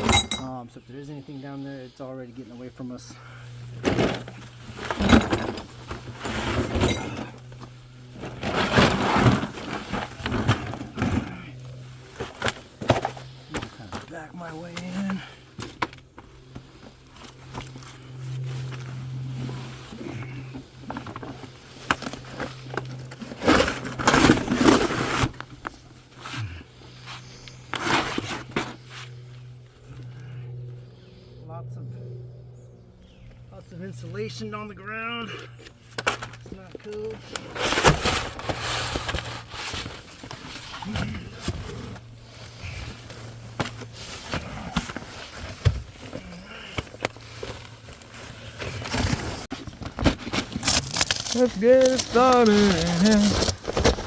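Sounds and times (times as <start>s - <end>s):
rustling of insulation: 0.0s - 30.9s, 33.1s - 54.0s
person crawling scuffing and scraping: 5.6s - 29.9s, 35.6s - 54.0s.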